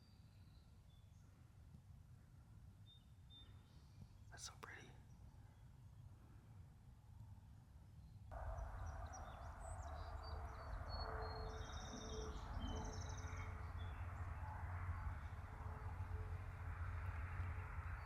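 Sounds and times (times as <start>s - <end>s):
low steady rumble: 8.3s - 18.0s
songbirds chirping and trilling: 8.3s - 18.0s.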